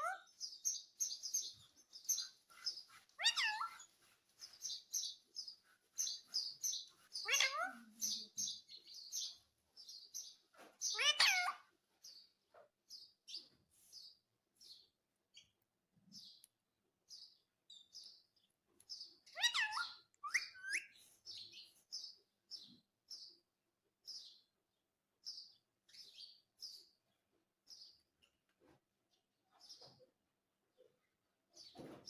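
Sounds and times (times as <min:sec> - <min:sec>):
parakeet chirping: 0:00.0 - 0:09.4, 0:10.8 - 0:11.6, 0:19.2 - 0:20.9.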